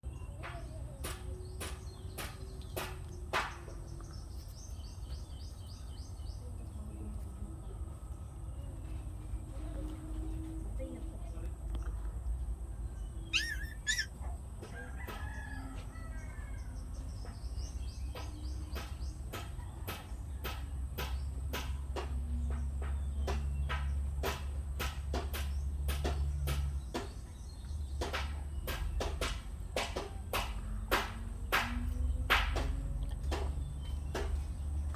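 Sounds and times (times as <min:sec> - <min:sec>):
short high squeaky calls: 0:13.2 - 0:14.2
rooster crowing: 0:13.4 - 0:17.1.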